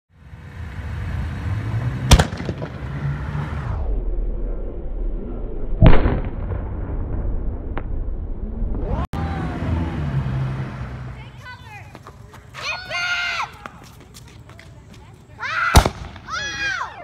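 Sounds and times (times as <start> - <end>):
steady low rumble: 0.1 - 10.0
fireworks bangs: 2.0 - 3.7, 15.6 - 16.8.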